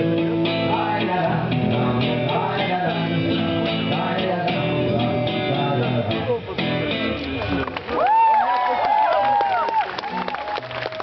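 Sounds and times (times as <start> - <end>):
strummed guitar: 0.0 - 7.9
live folk-rock band playing: 0.0 - 8.0.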